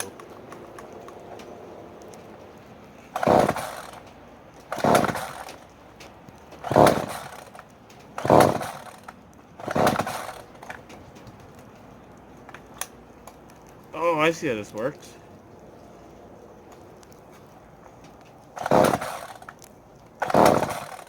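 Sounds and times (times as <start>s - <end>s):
chainsaw starter cord pulls: 3.1s - 11.0s, 18.5s - 21.0s.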